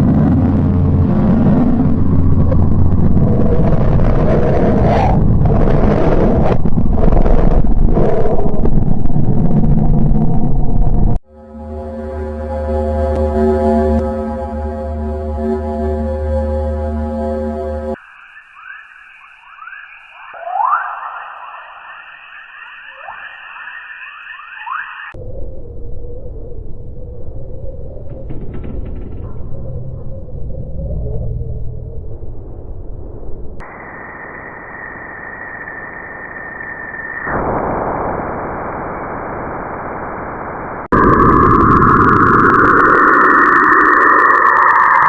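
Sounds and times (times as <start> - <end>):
low droning: 0.0 - 18.0, 25.2 - 45.0
steady high tone: 11.3 - 25.1
eerie hiss with rising chirps: 11.3 - 28.2, 30.2 - 40.3, 41.0 - 45.0.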